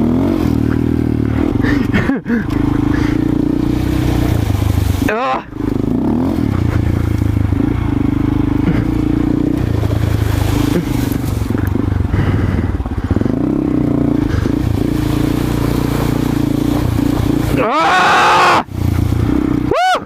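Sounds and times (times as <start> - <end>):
small motorcycle engine: 0.0 - 20.0.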